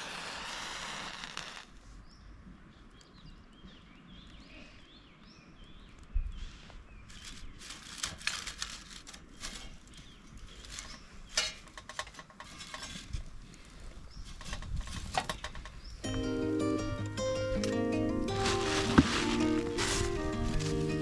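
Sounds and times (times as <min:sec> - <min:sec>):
camp gear clicks and scrapes: 0:07.1 - 0:16.2, 0:17.6 - 0:21.0.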